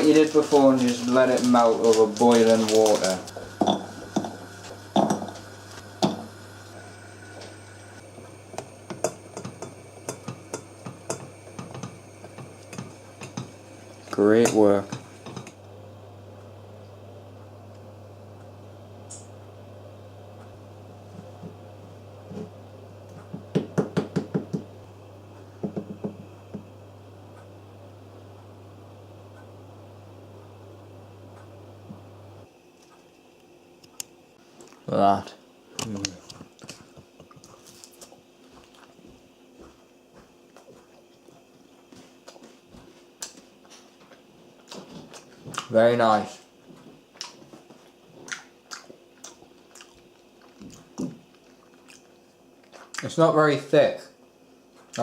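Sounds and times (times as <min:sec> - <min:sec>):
steady low hum: 0:00.0 - 0:55.0
utensil knocking against bowl: 0:05.0 - 0:05.4, 0:25.6 - 0:26.6.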